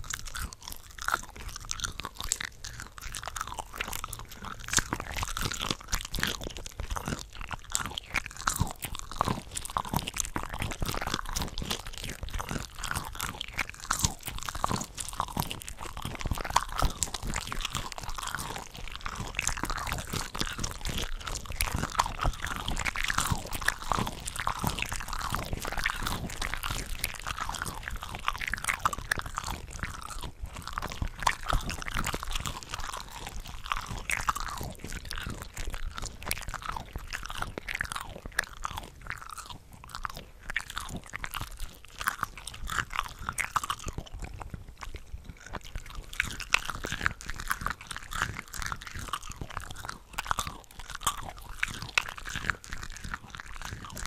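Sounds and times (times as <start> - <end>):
chewing with wet crackles: 0.0 - 54.0.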